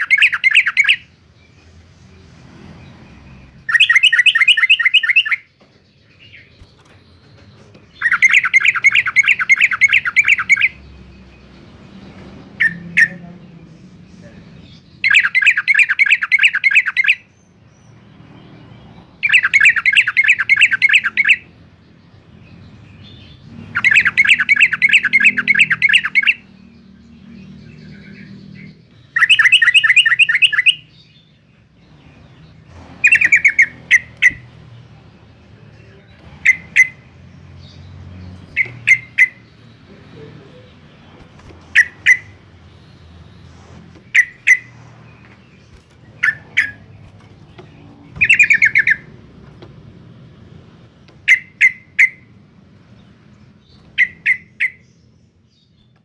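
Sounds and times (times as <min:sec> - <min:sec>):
bird chattering calls: 0:00.0 - 0:01.1, 0:03.6 - 0:05.5, 0:07.9 - 0:10.8, 0:12.6 - 0:13.3, 0:14.6 - 0:17.3, 0:19.2 - 0:21.5, 0:23.2 - 0:26.5, 0:27.8 - 0:30.9, 0:32.9 - 0:34.6, 0:36.3 - 0:43.3, 0:44.0 - 0:49.3, 0:51.2 - 0:52.4, 0:53.6 - 0:55.0.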